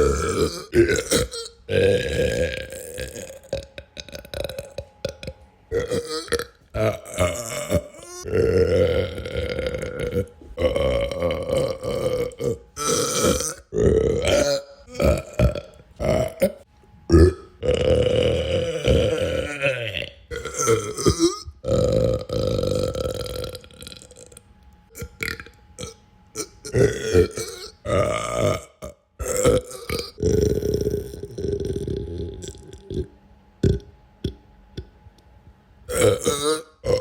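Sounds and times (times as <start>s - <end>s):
person belching: 0.0s - 34.9s, 35.9s - 37.0s.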